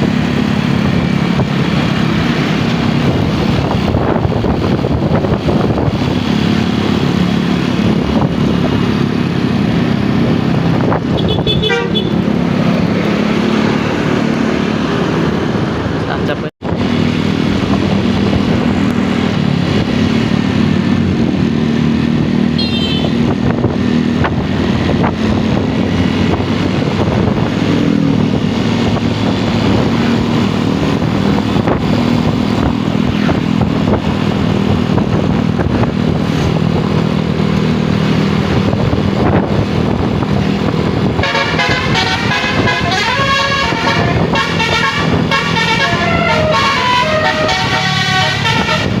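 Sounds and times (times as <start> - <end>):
bus engine running: 0.0 - 49.0
musical bus horn tune: 11.1 - 12.2, 22.6 - 23.2, 41.2 - 49.0.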